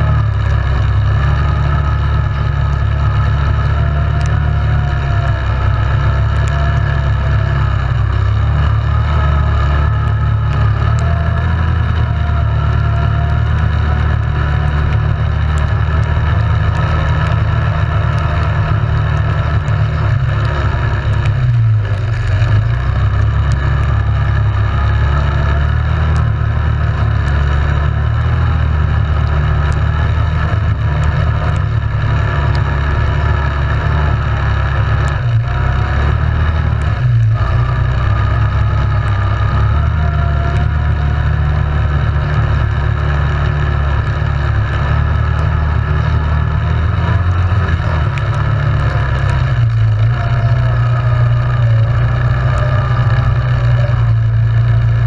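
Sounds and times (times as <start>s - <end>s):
atv engine running: 0.0s - 55.0s.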